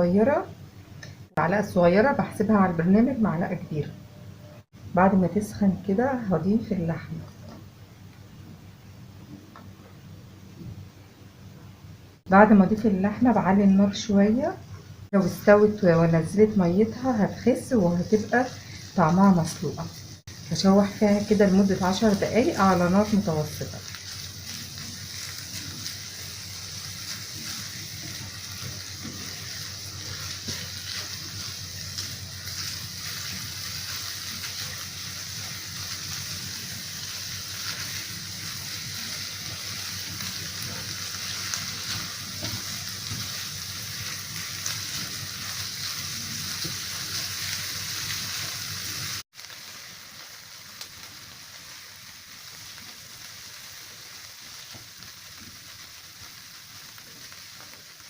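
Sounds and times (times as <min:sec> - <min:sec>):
beef sizzling in a pan: 0:15.1 - 0:58.0.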